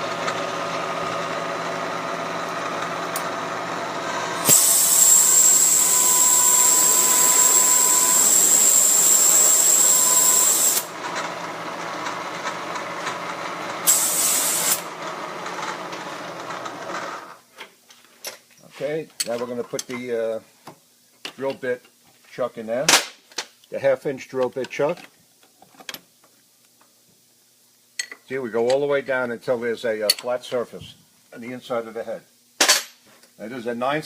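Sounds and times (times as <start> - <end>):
milling machine spindle hum: 0.0 - 17.3
compressed air hissing: 4.4 - 6.0, 8.3 - 10.9, 13.8 - 14.9.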